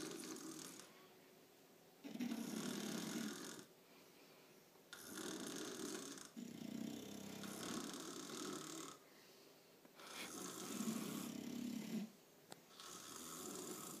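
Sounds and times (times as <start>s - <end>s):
snoring: 0.0s - 0.9s, 2.0s - 3.7s, 4.9s - 9.0s, 10.0s - 14.0s.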